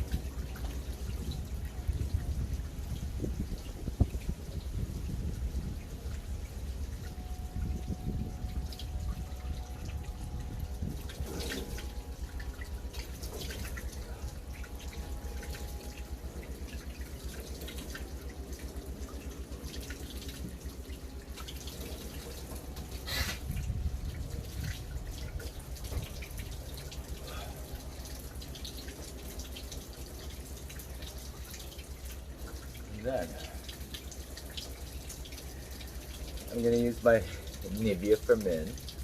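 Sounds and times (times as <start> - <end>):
water dripping: 0.0 - 39.0
water running from tap: 10.4 - 39.0.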